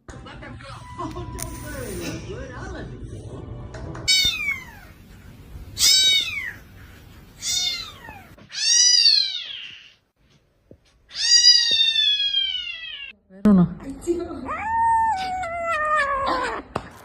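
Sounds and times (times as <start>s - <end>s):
cat meowing: 4.1s - 5.0s, 5.8s - 6.6s, 7.4s - 9.9s, 11.1s - 13.1s, 14.5s - 16.8s.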